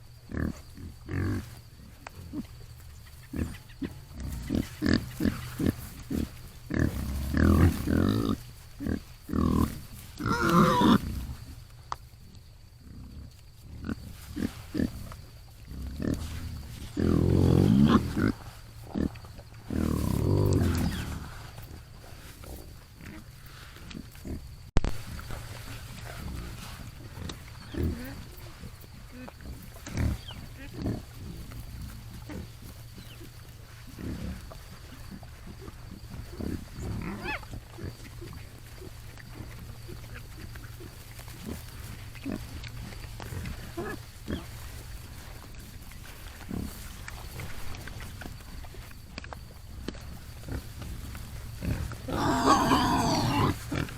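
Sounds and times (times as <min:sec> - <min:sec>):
hogs grunting: 0:00.0 - 0:11.6, 0:12.8 - 0:24.5, 0:25.2 - 0:53.9
hog grunts: 0:03.3 - 0:11.2, 0:51.6 - 0:53.9.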